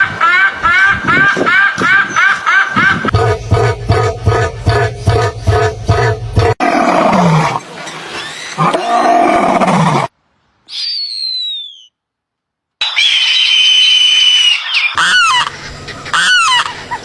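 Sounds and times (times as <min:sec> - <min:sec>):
rhythmic beat: 0:03.1 - 0:06.6
big cat roaring: 0:03.1 - 0:07.6, 0:08.6 - 0:10.1.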